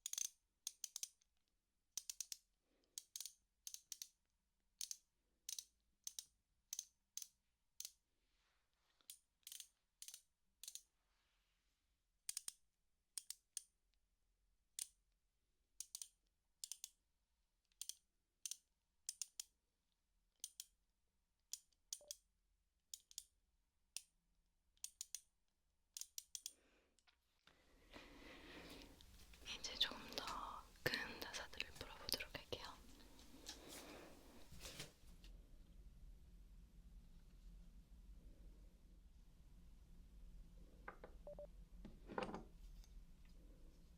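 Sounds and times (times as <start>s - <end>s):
socket wrench ratchet clicking: 0.0s - 1.1s.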